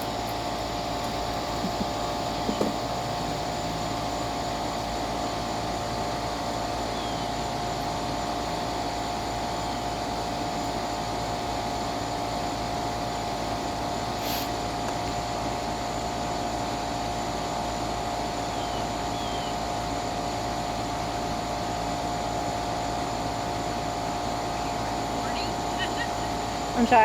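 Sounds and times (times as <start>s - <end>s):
machine hum with high whine: 0.0s - 27.0s
hiss: 14.1s - 14.8s.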